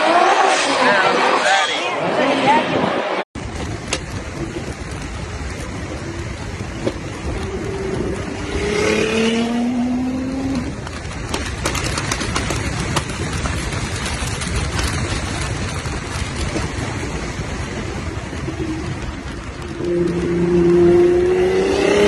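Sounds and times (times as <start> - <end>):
exhaust crackles: 3.4 - 22.0
car engine accelerating: 19.7 - 22.0.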